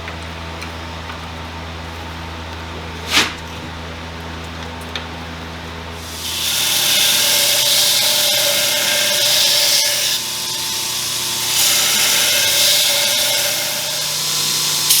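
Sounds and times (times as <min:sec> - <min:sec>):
steady motor hum: 0:00.0 - 0:09.4
grinder grinding steel blade: 0:06.0 - 0:15.0.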